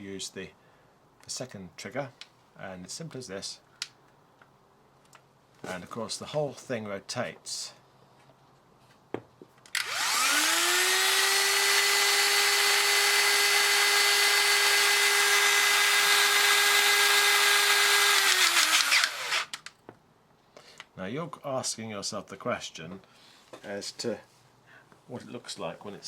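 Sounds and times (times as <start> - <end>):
electric motor and hydraulic pump whine: 9.8 - 19.6.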